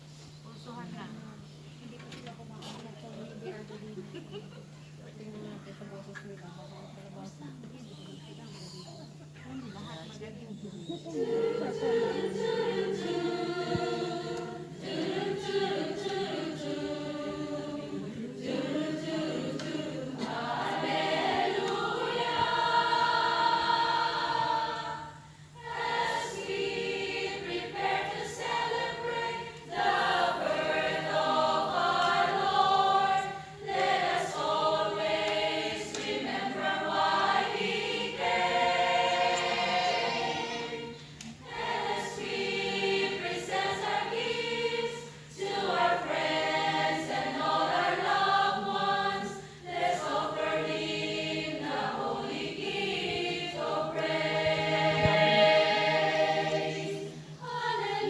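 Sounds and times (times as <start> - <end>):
church choir singing: 11.1 - 58.0.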